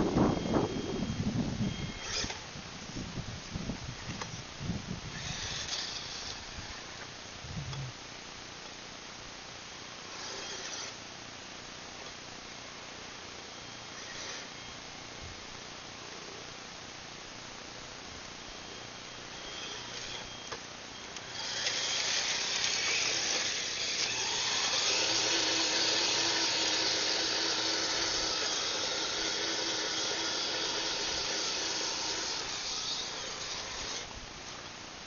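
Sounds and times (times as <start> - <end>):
toy electric motor whining: 0.0 - 2.4, 5.1 - 6.8, 10.0 - 11.0, 13.8 - 14.5, 19.3 - 34.1.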